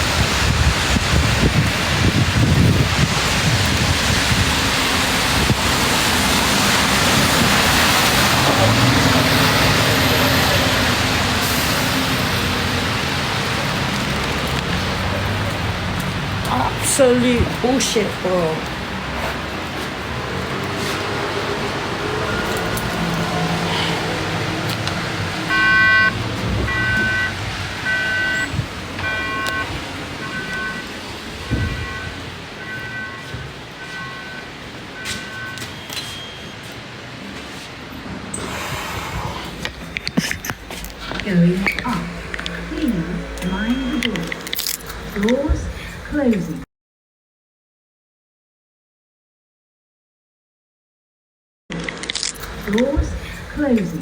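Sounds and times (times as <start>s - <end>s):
wind on microphone: 0.0s - 9.1s, 26.1s - 30.2s, 31.3s - 32.2s, 38.5s - 41.2s
heavy rain: 0.0s - 46.6s, 52.4s - 54.0s
electronic beeps: 25.5s - 30.9s, 41.5s - 44.4s.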